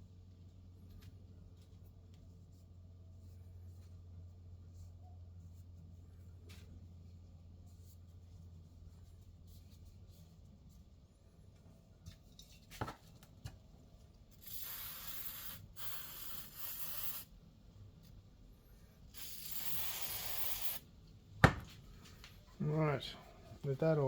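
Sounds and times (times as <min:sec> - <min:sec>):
aerosol can spraying: 0:14.4 - 0:17.3, 0:19.1 - 0:20.8.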